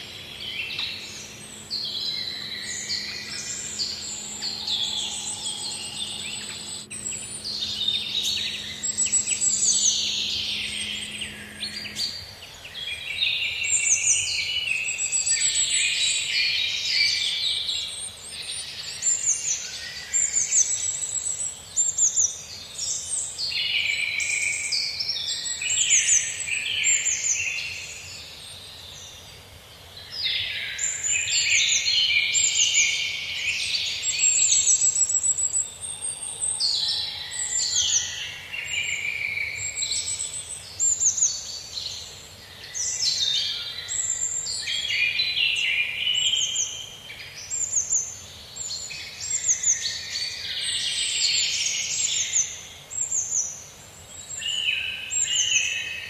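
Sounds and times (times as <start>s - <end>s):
faint low hum: 0.0s - 23.5s
songbirds chirping and trilling: 0.0s - 56.0s.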